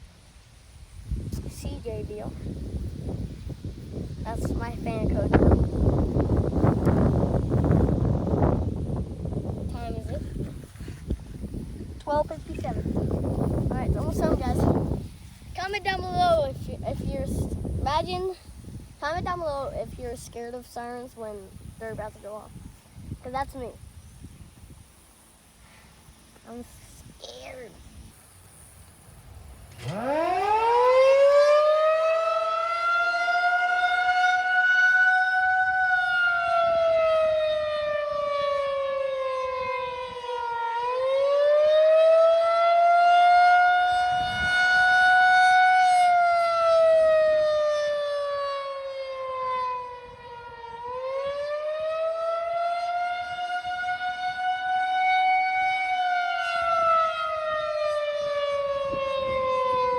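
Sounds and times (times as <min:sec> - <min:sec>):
tornado siren wailing: 0:02.6 - 0:15.4, 0:29.7 - 0:59.9.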